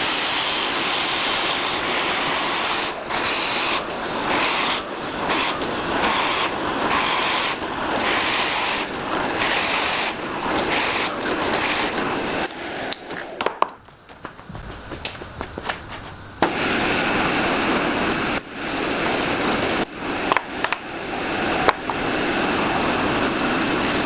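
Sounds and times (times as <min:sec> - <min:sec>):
sanding wood by hand: 0:00.0 - 0:13.3.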